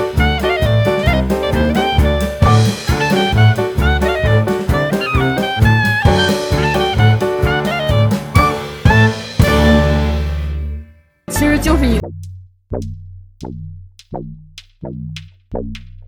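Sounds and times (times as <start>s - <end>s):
jazz music: 0.0s - 12.1s.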